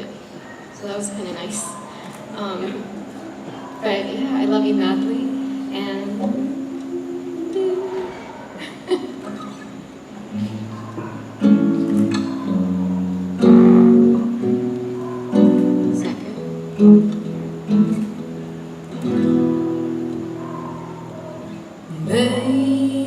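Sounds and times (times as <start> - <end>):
guitar chords ringing: 3.8 - 8.1, 10.4 - 23.0.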